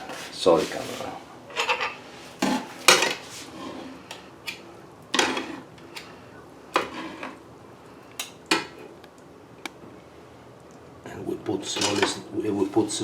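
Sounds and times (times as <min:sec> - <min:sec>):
utensil scraping cooking pan: 0:00.0 - 0:04.1, 0:05.1 - 0:06.0, 0:06.7 - 0:07.4.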